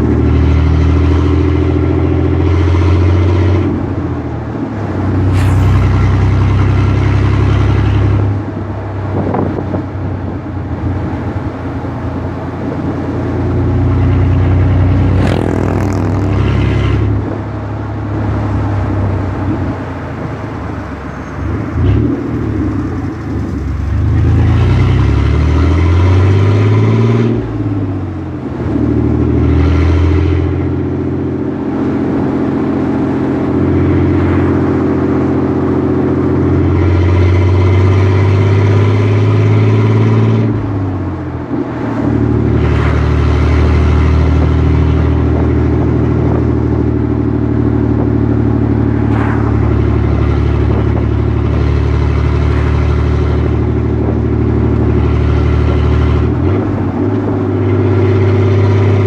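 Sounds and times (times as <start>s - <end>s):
car engine accelerating: 0.0s - 9.6s, 10.2s - 59.0s.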